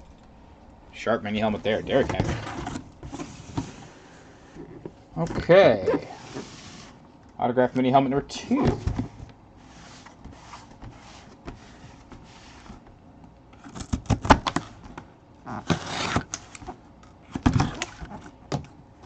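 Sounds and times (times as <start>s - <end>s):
cardboard scraping: 1.6s - 7.0s, 15.6s - 16.3s.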